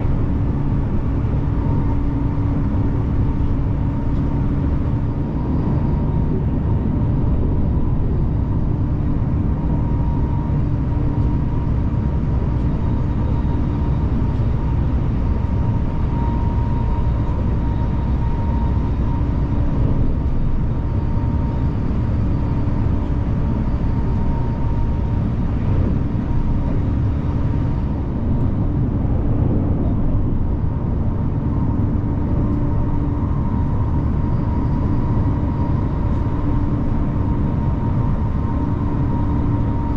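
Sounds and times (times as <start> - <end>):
train rumble inside carriage: 0.0 - 39.9.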